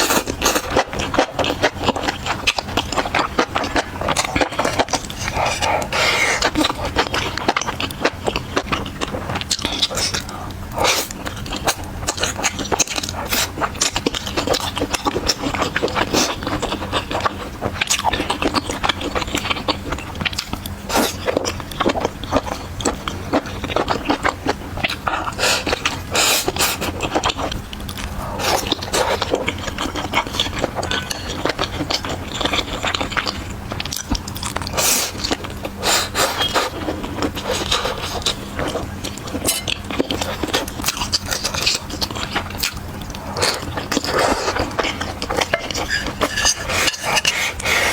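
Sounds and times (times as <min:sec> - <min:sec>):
chewing crackles: 0:00.0 - 0:47.9
faint steady hum: 0:00.0 - 0:47.9
utensils scraping: 0:43.4 - 0:47.9.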